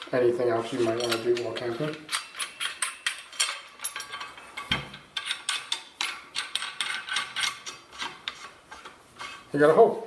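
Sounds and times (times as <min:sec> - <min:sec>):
steel shovel parts clinking: 0:00.7 - 0:07.7.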